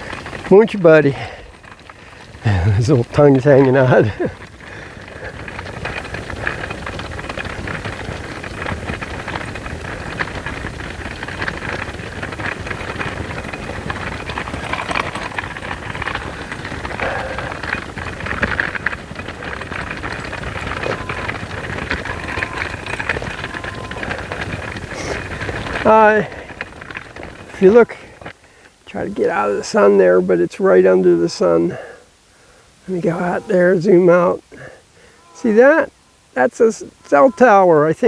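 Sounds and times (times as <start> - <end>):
small rattling clicks: 0.0 - 28.9
crunching footsteps outdoors: 0.0 - 38.0.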